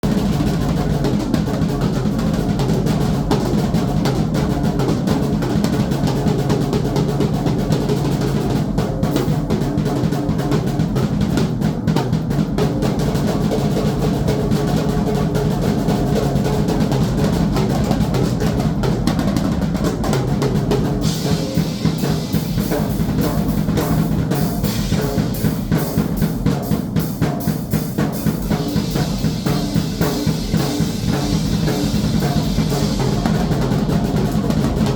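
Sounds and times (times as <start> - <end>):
drum kit playing: 0.0 - 34.9
cymbals crashing: 21.0 - 26.3, 28.2 - 34.9.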